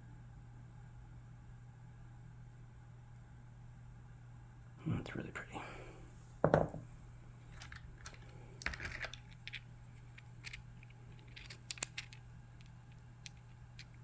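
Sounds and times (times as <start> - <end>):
stone pieces clicking and tapping: 7.5 - 14.0.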